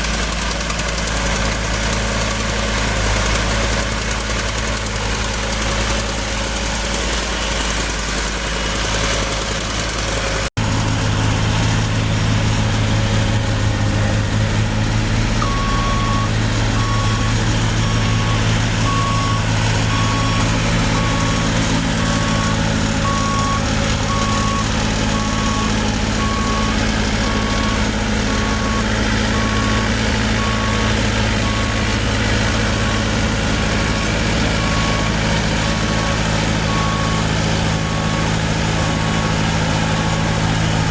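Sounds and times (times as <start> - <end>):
diesel engine running: 0.0 - 40.9
reversing alarm beeping: 15.4 - 40.9.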